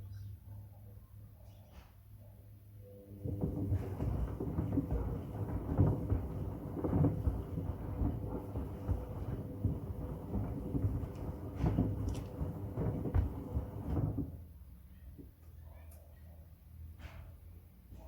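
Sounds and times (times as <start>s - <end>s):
washing machine motor hum: 3.1s - 14.5s
wood banging in washing drum: 3.2s - 14.4s.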